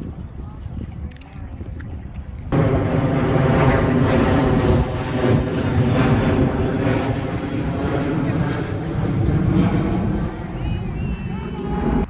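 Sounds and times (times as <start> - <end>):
airplane flying low overhead: 2.5 - 12.0.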